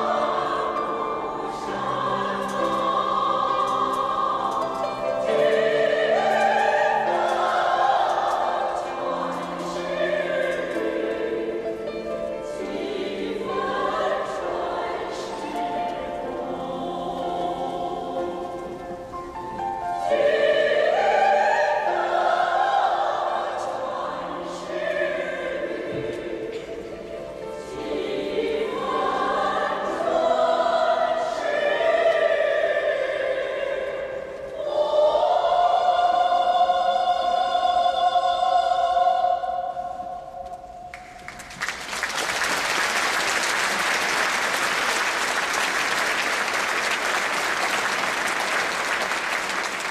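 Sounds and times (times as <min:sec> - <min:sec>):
choir singing: 0:00.0 - 0:41.3, 0:42.0 - 0:49.9
audience applause: 0:41.0 - 0:49.9.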